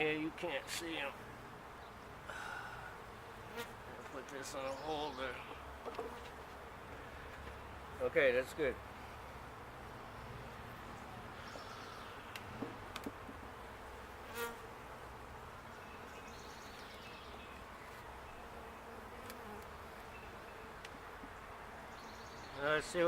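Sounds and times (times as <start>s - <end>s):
honeybees buzzing: 8.9s - 21.9s.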